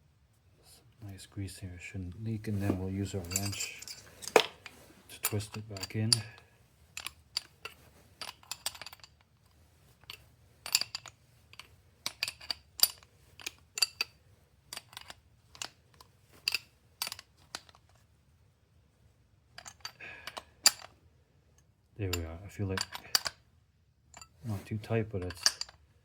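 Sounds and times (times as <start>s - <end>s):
wrench clinking on metal: 2.7s - 6.4s, 7.0s - 9.2s, 10.0s - 15.8s, 19.6s - 20.9s, 22.8s - 23.4s, 25.2s - 25.8s.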